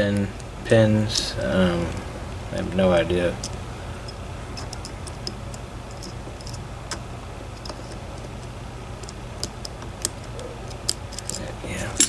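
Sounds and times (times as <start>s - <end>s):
steady low hum: 0.0s - 12.0s
lock pick metallic clicks: 3.4s - 11.4s.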